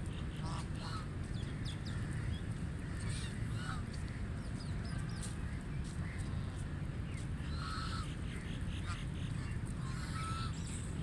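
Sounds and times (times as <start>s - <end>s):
steady low rumble: 0.0s - 11.0s
ducks quacking: 0.3s - 1.1s, 7.4s - 10.8s.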